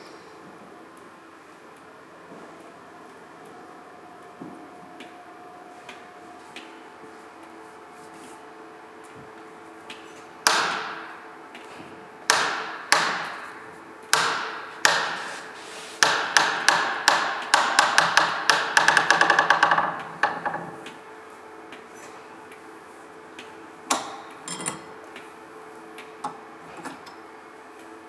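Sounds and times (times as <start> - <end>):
rapid hammer taps: 10.5 - 11.0, 12.3 - 13.4, 14.1 - 15.4, 16.0 - 20.5
hammer striking metal: 10.5 - 11.2, 12.3 - 15.4, 16.0 - 19.1.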